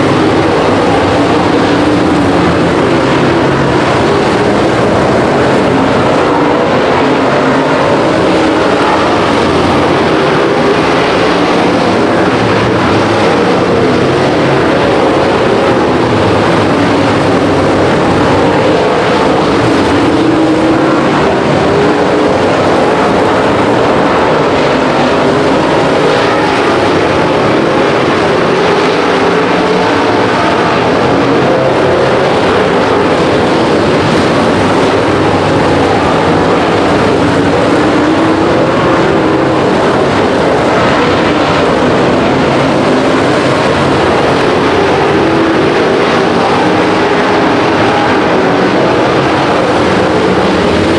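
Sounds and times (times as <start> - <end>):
race car engines: 0.0 - 50.9.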